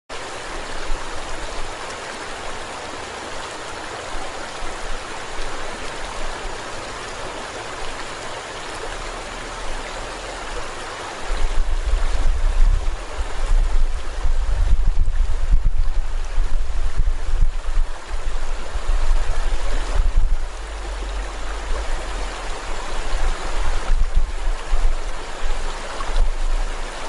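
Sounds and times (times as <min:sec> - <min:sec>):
river water rushing: 0:00.1 - 0:27.0
wind buffeting microphone: 0:08.6 - 0:27.0.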